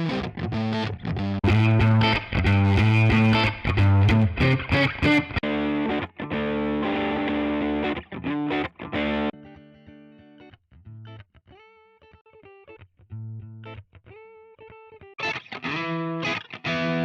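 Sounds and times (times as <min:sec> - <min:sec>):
distorted electric guitar: 0:00.0 - 0:09.6, 0:15.2 - 0:17.0.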